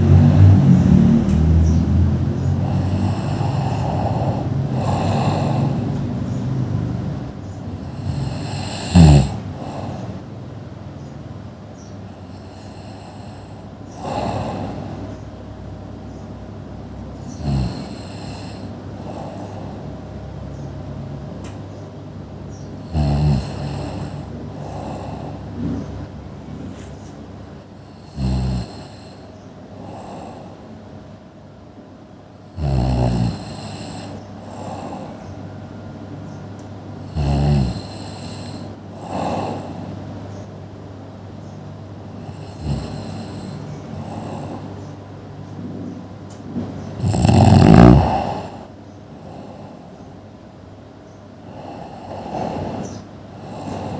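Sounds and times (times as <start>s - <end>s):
loud snoring: 0.0s - 10.4s, 12.1s - 15.2s, 17.1s - 20.1s, 22.8s - 26.0s, 27.4s - 30.6s, 32.4s - 35.4s, 37.0s - 39.9s, 42.0s - 44.8s, 46.6s - 49.9s, 51.4s - 53.9s
low rattling breath: 0.0s - 11.1s, 11.8s - 15.5s, 17.0s - 21.0s, 22.5s - 30.8s, 32.6s - 40.4s, 42.0s - 44.9s, 46.6s - 50.2s, 51.4s - 53.9s.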